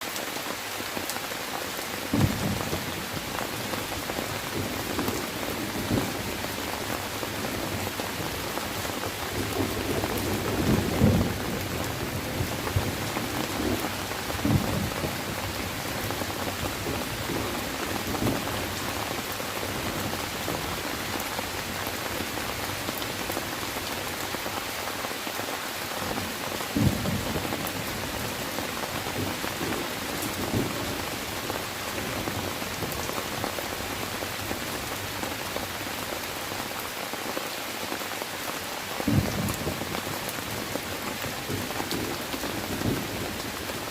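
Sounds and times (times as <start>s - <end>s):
steady rain falling: 0.0s - 43.9s
low thunder rumbles: 4.4s - 18.8s, 26.1s - 28.4s.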